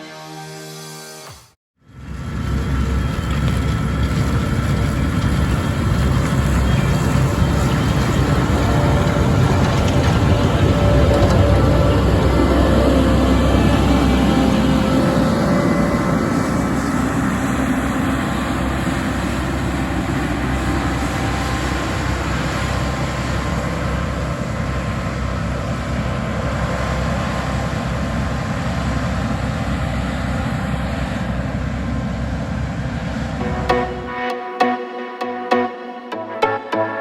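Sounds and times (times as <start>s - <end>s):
diesel engine rumbling: 1.9s - 34.3s.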